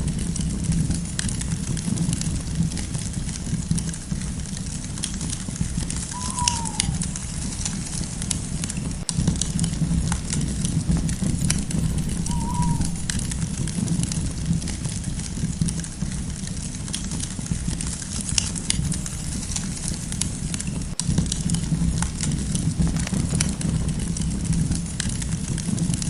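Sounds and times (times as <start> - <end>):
campfire crackling and popping: 0.0 - 26.0
bird short falling call: 6.0 - 8.9, 11.5 - 13.4.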